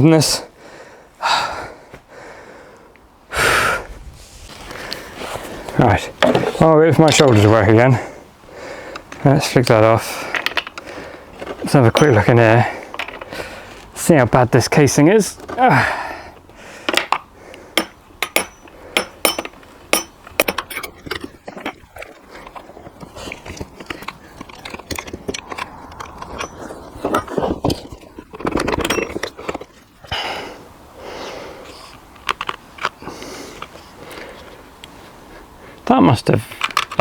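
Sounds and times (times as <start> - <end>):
plastic parts rubbing and scraping: 4.2 - 7.8, 9.0 - 14.0, 20.3 - 30.1, 31.7 - 34.6
plastic parts clicking and knocking: 6.2 - 7.5, 10.2 - 13.4, 16.8 - 29.8, 31.9 - 33.0, 36.5 - 37.0.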